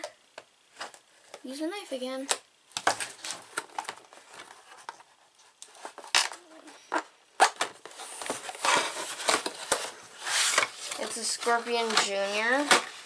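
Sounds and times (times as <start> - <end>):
packaging rustling: 2.8 - 13.0.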